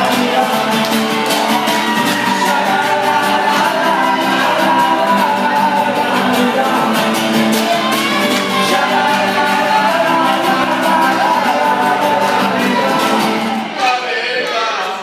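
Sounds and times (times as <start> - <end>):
live band playing pop song: 0.0 - 13.7.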